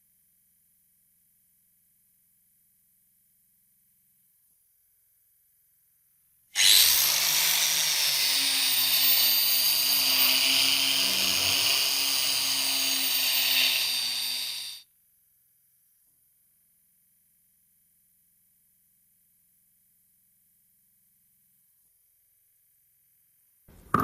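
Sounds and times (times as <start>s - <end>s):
power drill whirring: 6.6s - 14.8s.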